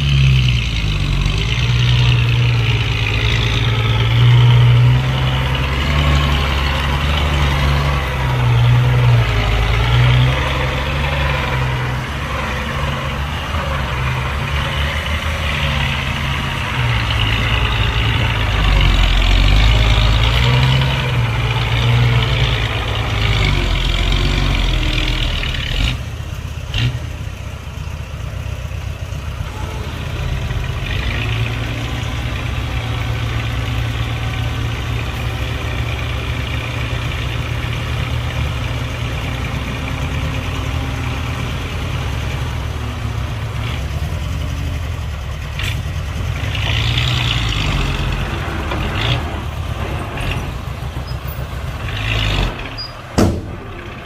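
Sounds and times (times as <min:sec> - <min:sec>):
heavy diesel engines working: 0:00.0 - 0:54.0
short sharp knock: 0:53.2 - 0:53.6.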